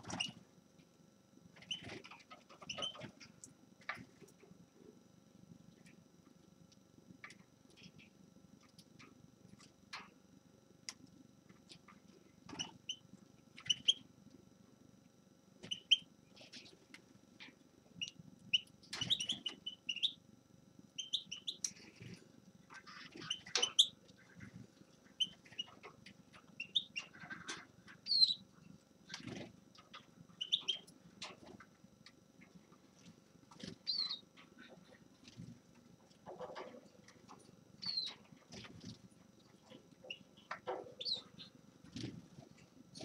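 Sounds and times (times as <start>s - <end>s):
finch chirping: 1.6s - 3.1s, 13.6s - 14.0s, 15.6s - 16.7s, 18.0s - 20.2s, 21.0s - 21.7s, 22.7s - 24.5s, 25.1s - 28.4s, 30.4s - 30.9s, 33.8s - 34.8s, 37.8s - 38.3s, 40.0s - 41.6s.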